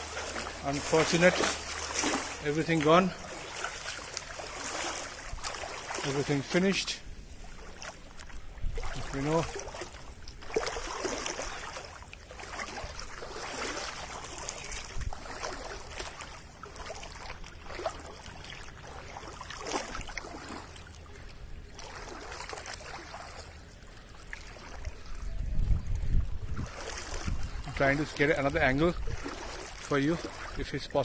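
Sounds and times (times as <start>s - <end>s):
water splashing and trickling: 0.0s - 31.0s.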